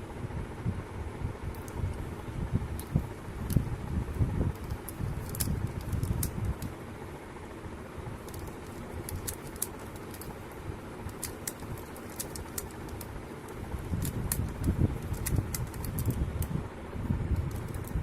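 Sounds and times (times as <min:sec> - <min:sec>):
steady low rumble: 0:00.0 - 0:18.0
puzzle clicking in hands: 0:01.5 - 0:02.1, 0:02.8 - 0:03.8, 0:04.5 - 0:06.8, 0:08.2 - 0:16.5, 0:17.4 - 0:18.0.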